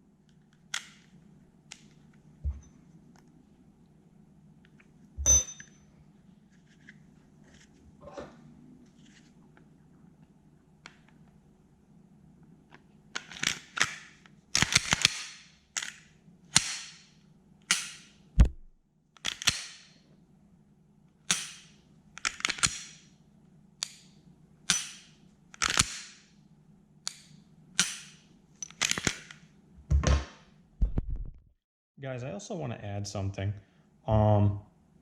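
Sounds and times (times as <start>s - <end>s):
pistol metallic clicks: 17.7s - 18.2s, 19.2s - 20.0s, 21.3s - 23.0s, 24.7s - 26.2s, 27.1s - 29.4s.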